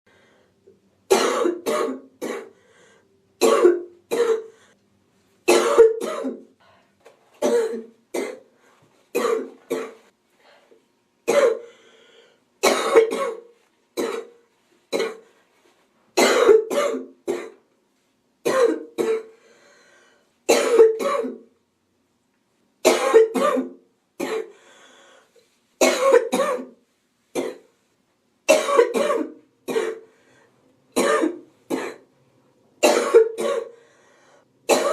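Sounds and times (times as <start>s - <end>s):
woman coughing: 1.1s - 2.6s, 3.4s - 4.5s, 5.5s - 6.5s, 7.4s - 8.5s, 9.2s - 10.0s, 11.3s - 11.7s, 12.6s - 15.2s, 16.2s - 17.6s, 18.5s - 19.3s, 20.5s - 21.4s, 22.8s - 24.5s, 25.8s - 26.8s, 28.5s - 30.0s, 31.0s - 32.1s, 32.8s - 33.8s, 34.7s - 34.9s
faint breaths: 2.5s - 3.2s, 11.6s - 12.6s, 19.3s - 20.4s, 24.5s - 25.7s, 30.0s - 30.8s, 33.7s - 34.6s.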